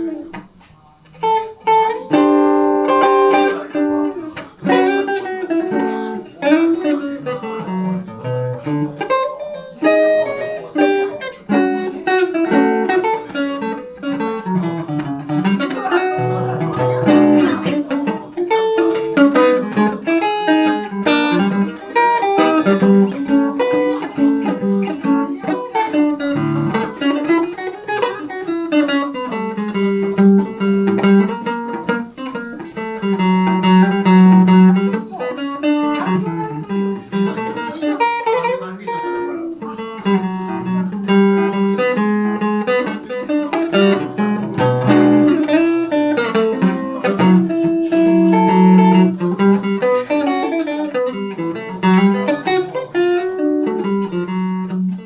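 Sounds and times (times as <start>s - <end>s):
electric guitar playing blues: 0.0s - 55.0s.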